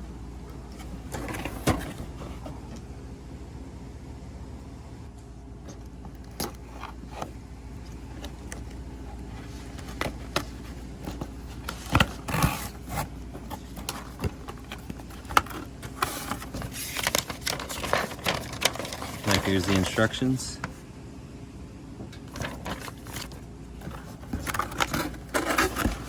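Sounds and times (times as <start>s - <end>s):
packaging rustling and scraping: 0.7s - 2.7s, 5.7s - 20.4s, 22.1s - 26.0s.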